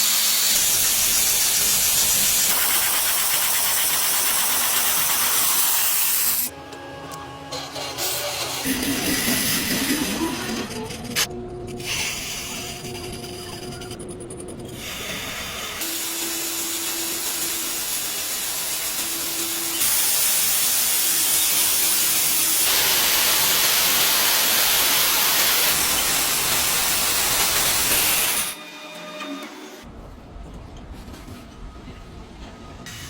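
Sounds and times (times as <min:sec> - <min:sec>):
hissing spray: 0:00.0 - 0:06.5, 0:14.8 - 0:28.6.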